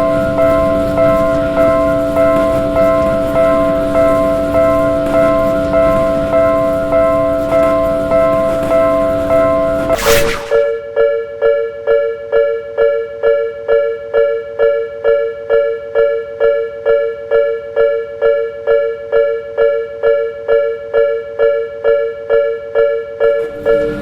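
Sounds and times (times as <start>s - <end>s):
level crossing warning bell: 0.0s - 10.0s, 23.4s - 24.0s.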